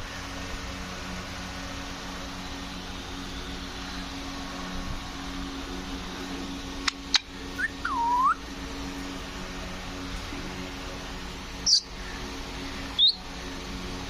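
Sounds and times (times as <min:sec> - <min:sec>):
parrot chirp: 0:06.8 - 0:08.4, 0:11.6 - 0:12.0, 0:12.9 - 0:13.2
parrot whistling: 0:06.8 - 0:08.4, 0:11.6 - 0:11.9, 0:13.0 - 0:13.2.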